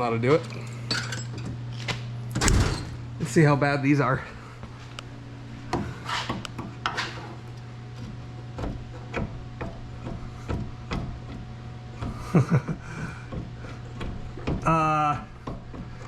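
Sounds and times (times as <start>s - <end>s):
steady low hum: 0.0s - 16.0s
pry bar knocks and clunks: 13.2s - 14.7s.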